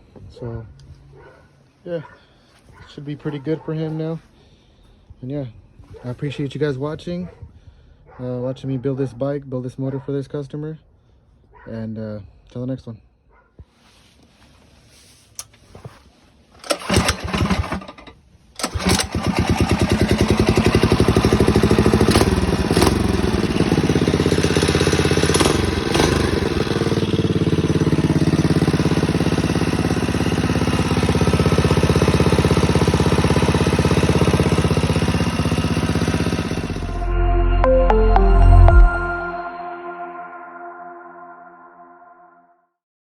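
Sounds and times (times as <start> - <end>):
small engine starting and running: 16.6 - 37.1.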